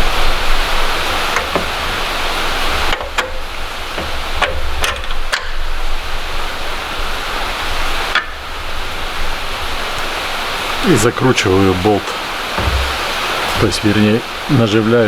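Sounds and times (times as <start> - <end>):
steady noisy hiss: 0.0 - 15.0
sharp clicks and knocks: 1.1 - 2.1, 2.8 - 5.6, 12.6 - 13.8.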